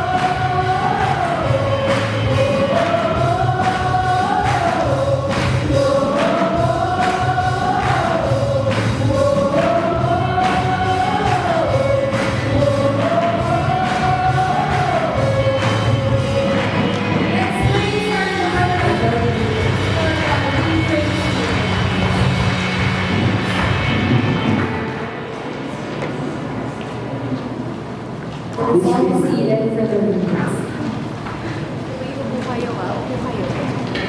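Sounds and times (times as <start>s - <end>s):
group singing in unison: 0.0s - 20.2s
instrumental accompaniment with beat: 0.0s - 25.0s.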